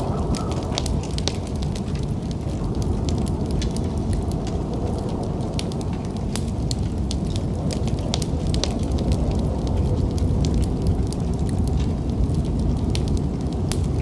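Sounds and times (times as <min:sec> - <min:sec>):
low rumble: 0:00.0 - 0:14.0
wood fire crackling and popping: 0:00.0 - 0:14.0.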